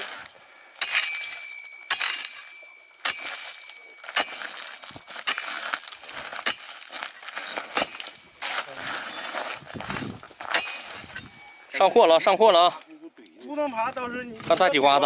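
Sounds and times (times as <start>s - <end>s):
ice chips clinking: 0.0s - 8.2s
tool striking ice: 0.8s - 9.4s, 10.4s - 11.3s.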